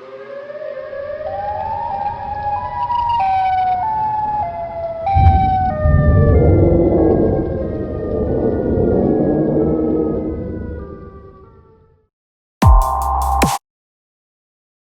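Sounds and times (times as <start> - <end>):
wailing siren: 0.0 - 12.1
deep rumble: 5.1 - 11.4.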